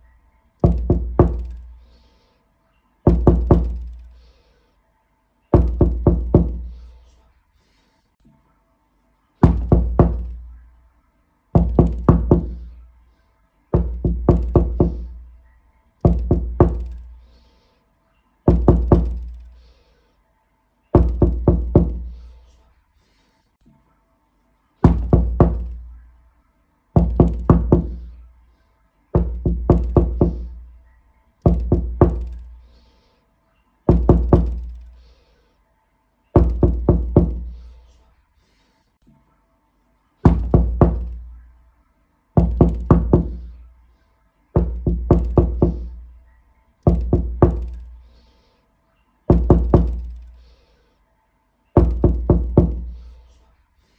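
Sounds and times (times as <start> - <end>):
knocking on a door: 0.6 - 1.7, 3.1 - 4.0, 5.6 - 6.8, 9.4 - 10.6, 11.6 - 12.8, 13.8 - 15.2, 16.0 - 17.1, 18.5 - 19.5, 21.0 - 22.2, 24.8 - 25.9, 27.0 - 28.2, 29.2 - 30.7, 31.5 - 32.5, 33.9 - 34.9, 36.4 - 37.6, 40.3 - 41.3, 42.4 - 43.6, 44.6 - 46.1, 46.9 - 48.0, 49.3 - 50.3, 51.8 - 53.0.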